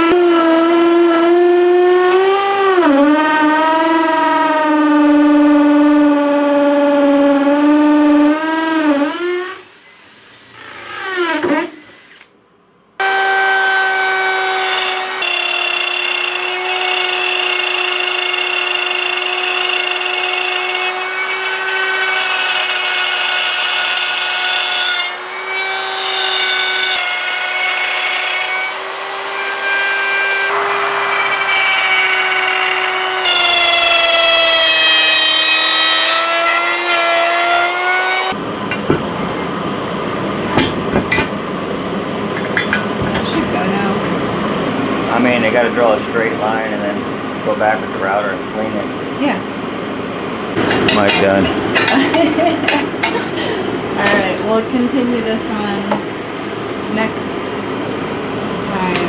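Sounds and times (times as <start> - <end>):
power drill whining: 7.4 - 12.3, 13.0 - 38.4.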